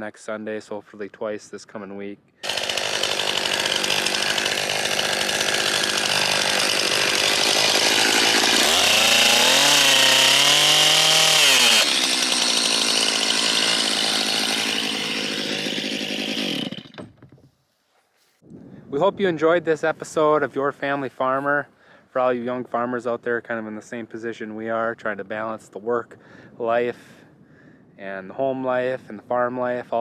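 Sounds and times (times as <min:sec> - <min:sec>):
chainsaw running: 0:02.4 - 0:17.2.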